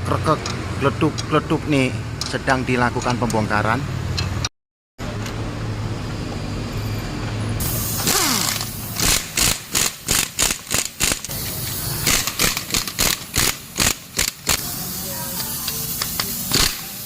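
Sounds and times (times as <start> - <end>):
wrench rattling bursts: 8.0 - 14.7, 15.4 - 17.0.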